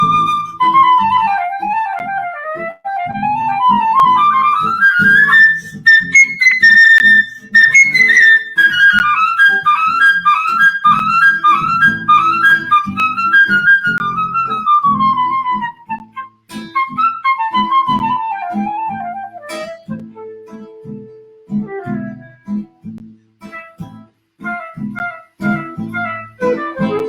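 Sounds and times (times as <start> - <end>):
high wind-like melody: 3.2 - 14.8.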